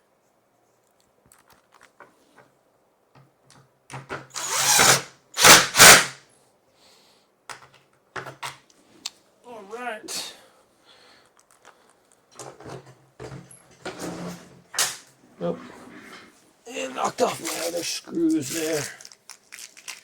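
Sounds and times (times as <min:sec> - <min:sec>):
power drill driving screws: 0:04.3 - 0:06.2.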